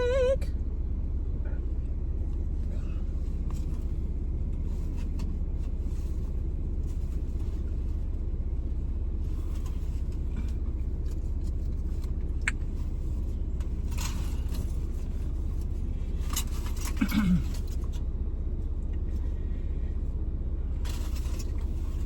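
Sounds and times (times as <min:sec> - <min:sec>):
car engine idling: 0:00.0 - 0:22.0
rustling: 0:03.0 - 0:18.0, 0:20.8 - 0:22.0.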